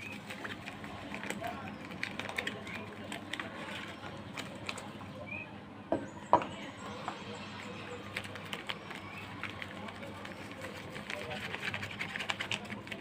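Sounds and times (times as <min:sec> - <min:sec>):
packaging crackling and clicking: 0:00.0 - 0:05.0.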